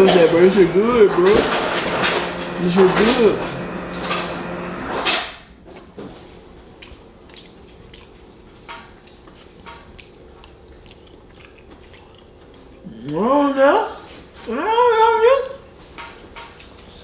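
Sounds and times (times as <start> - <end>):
takeout containers rustling: 0.0 - 5.2
person chewing food: 5.8 - 13.2, 15.8 - 17.0.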